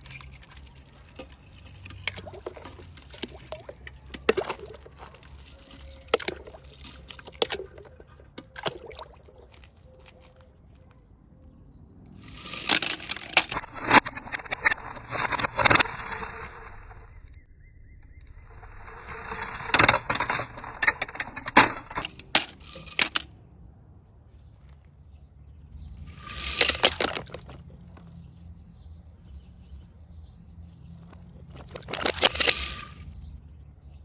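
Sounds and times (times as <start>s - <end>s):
toy cars splashing into water: 0.0s - 9.5s, 12.2s - 13.6s, 26.1s - 27.7s, 31.4s - 33.0s
toy cars clattering: 0.0s - 10.3s, 12.1s - 17.1s, 18.5s - 23.4s, 26.0s - 34.0s.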